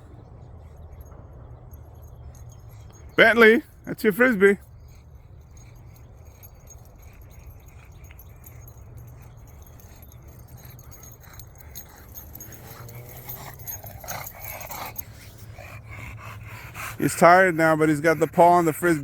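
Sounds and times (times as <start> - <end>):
dog panting: 0.0 - 19.0.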